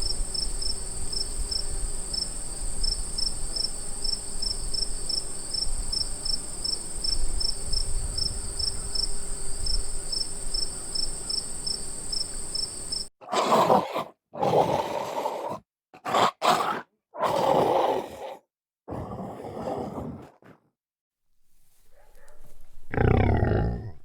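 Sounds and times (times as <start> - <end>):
crickets chirping: 0.0 - 13.1
animal bark or growl: 13.2 - 20.6, 21.9 - 24.0.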